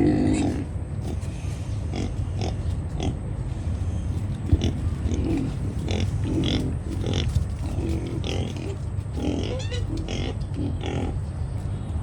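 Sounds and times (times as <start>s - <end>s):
pigs squealing and grunting: 0.0s - 11.3s
steady low hum: 0.0s - 12.0s.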